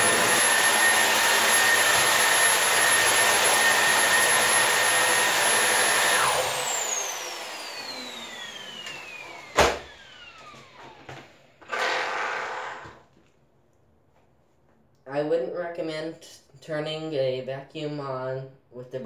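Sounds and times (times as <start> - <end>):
motor spinning down: 0.0 - 11.1
vacuum cleaner running: 0.0 - 13.1.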